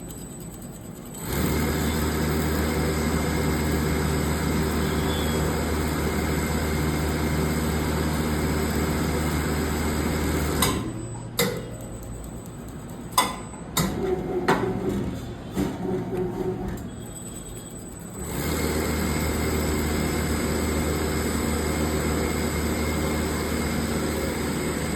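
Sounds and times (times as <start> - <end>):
winding machine motor humming: 0.0 - 10.7, 16.8 - 24.9
sharp mechanical clicks and knocks: 10.5 - 18.5.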